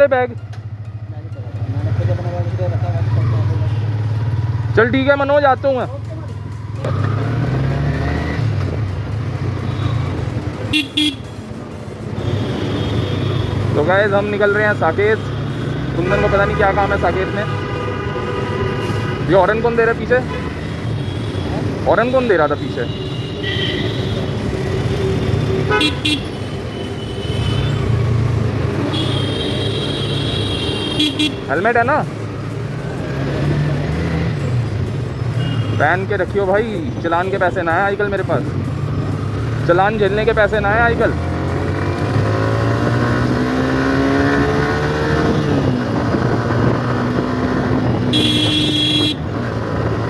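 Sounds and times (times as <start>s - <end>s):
traffic engine rumble: 0.0s - 50.0s
motorcycle engine running: 0.5s - 22.2s
vehicle horns honking: 9.6s - 11.4s, 12.1s - 31.9s, 35.2s - 36.0s, 41.2s - 49.6s.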